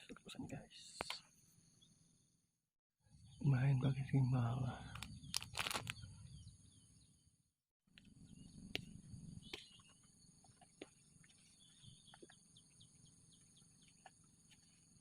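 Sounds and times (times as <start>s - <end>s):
faint bird chirps: 8.0s - 15.0s.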